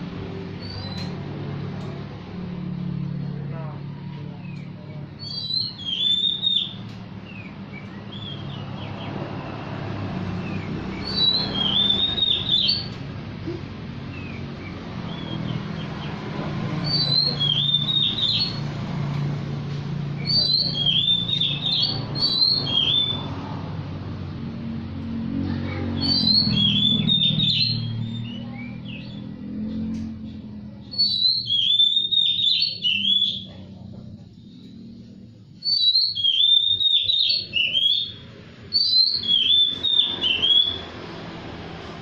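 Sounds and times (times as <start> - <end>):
bird song from phone: 0.4 - 1.2, 4.3 - 13.2, 14.0 - 18.8, 20.1 - 23.6, 25.8 - 41.5
bird whistled song: 0.6 - 1.2, 4.5 - 9.2, 10.4 - 13.0, 14.1 - 16.2, 16.8 - 18.7, 20.1 - 23.4, 26.0 - 29.4, 30.7 - 33.6, 35.6 - 41.0
quieter bird calls: 10.4 - 18.7, 25.8 - 41.1.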